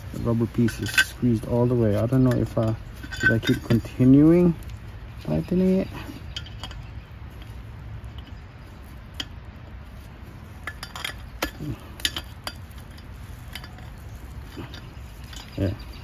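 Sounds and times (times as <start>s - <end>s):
light metal clinks and clicks: 0.1s - 16.0s.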